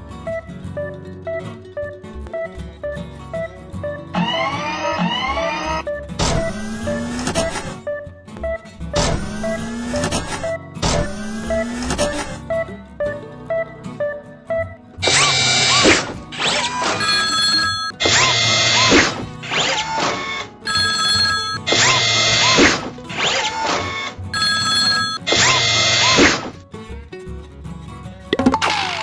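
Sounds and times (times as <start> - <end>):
background music: 0.0 - 29.0
short beeps: 3.8 - 26.2
level-crossing warning bell: 16.7 - 18.0, 20.7 - 21.6, 24.4 - 25.3.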